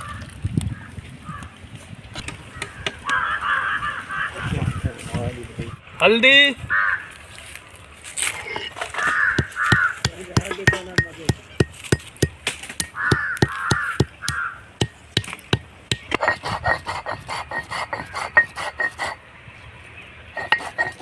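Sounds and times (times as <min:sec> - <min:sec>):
crow cawing: 0:02.5 - 0:04.8, 0:06.6 - 0:07.3, 0:08.8 - 0:10.2, 0:12.8 - 0:15.0
sharp irregular knocks and clicks: 0:08.6 - 0:16.4.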